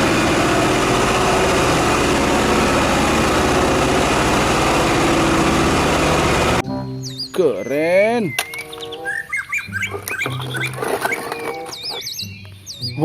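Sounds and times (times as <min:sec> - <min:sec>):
motor running with hiss: 0:00.0 - 0:06.6.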